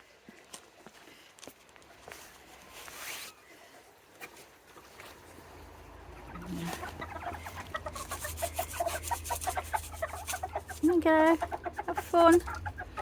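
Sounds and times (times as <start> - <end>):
chickens clucking: 3.7 - 13.0.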